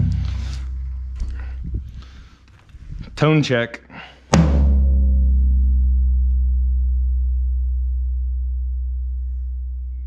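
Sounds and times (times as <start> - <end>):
floor tom deep boom: 0.0 - 1.9, 4.3 - 10.0.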